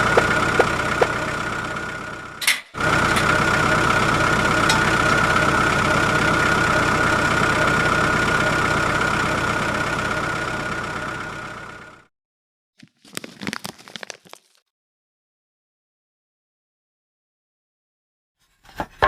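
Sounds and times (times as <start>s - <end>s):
motor humming: 0.0s - 11.9s.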